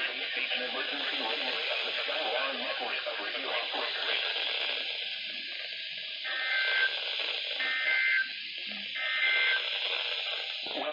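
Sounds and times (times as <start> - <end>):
radio hiss: 0.0 - 10.9
two-tone digital data bursts: 3.5 - 10.9.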